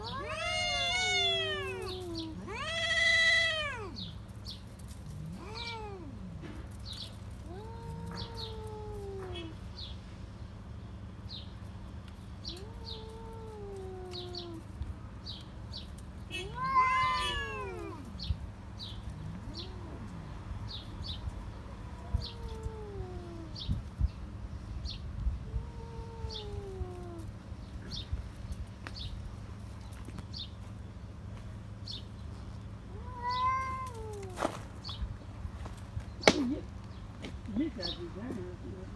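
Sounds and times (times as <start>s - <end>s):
cats yowling: 0.0s - 4.2s, 4.8s - 6.6s, 7.2s - 9.7s, 12.4s - 14.8s, 16.3s - 24.0s, 25.4s - 28.0s, 32.9s - 34.6s.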